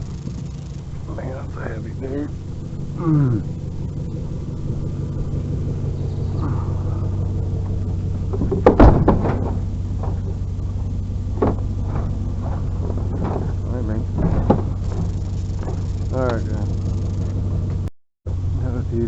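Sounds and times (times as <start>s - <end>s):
truck engine idling: 0.0s - 19.0s
loud thump: 7.6s - 10.3s, 11.3s - 17.4s.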